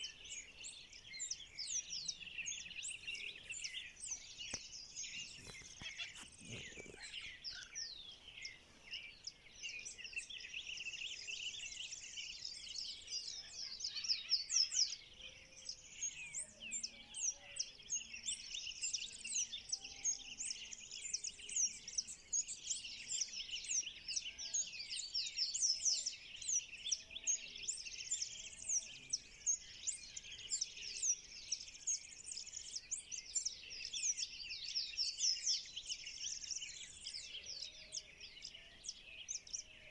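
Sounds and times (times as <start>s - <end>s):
lower bird calls: 0.0s - 15.0s
birds chirping: 0.0s - 39.9s.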